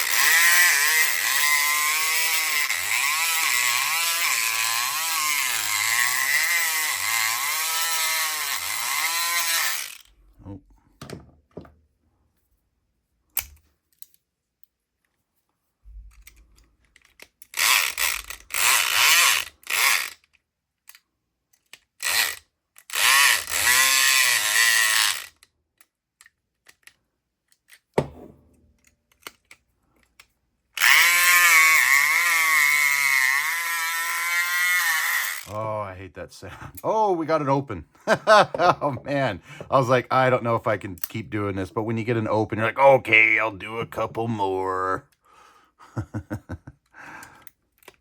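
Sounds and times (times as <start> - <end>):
electric pick gun buzzing: 0.0 - 10.1, 17.6 - 20.1, 22.0 - 25.3, 30.8 - 35.5.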